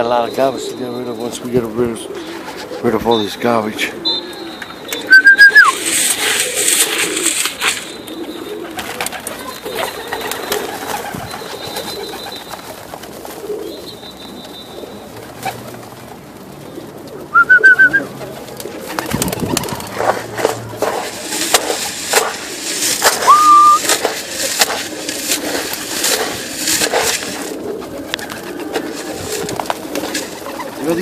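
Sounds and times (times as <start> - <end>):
pigeons cooing: 0.0 - 31.0
short high chirps: 23.3 - 23.8.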